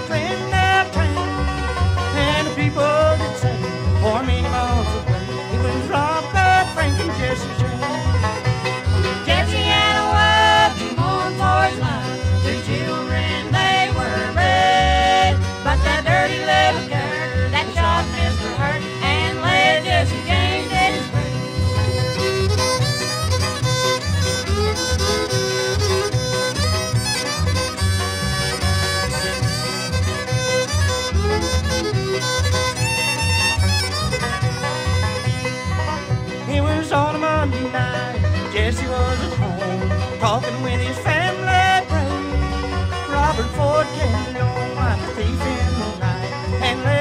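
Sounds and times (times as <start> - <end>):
banjo: 0.0 - 47.0
bass: 0.0 - 47.0
fiddle: 0.0 - 47.0
guitar: 0.0 - 47.0
mandolin: 0.0 - 47.0.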